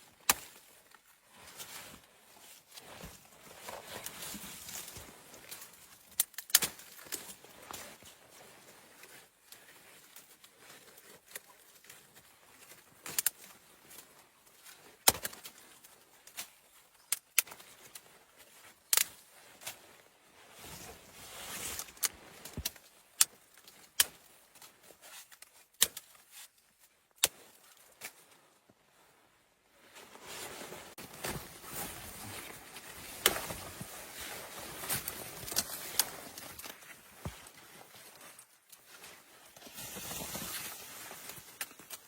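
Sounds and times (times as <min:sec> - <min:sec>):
scraping rustle: 0:30.0 - 0:42.0.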